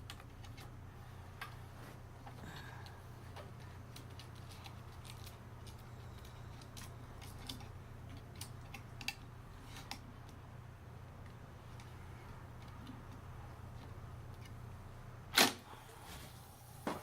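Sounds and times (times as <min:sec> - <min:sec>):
tape deck hum: 0:15.4 - 0:17.0.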